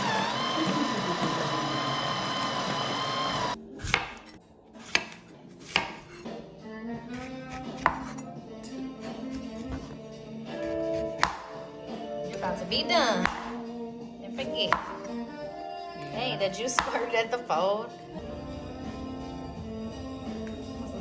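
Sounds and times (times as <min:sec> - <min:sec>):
juicer motor whine: 0:00.0 - 0:03.6.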